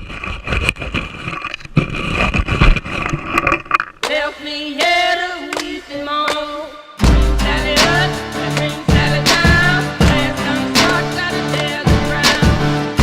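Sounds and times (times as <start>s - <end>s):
music with singing voice: 4.0s - 13.0s.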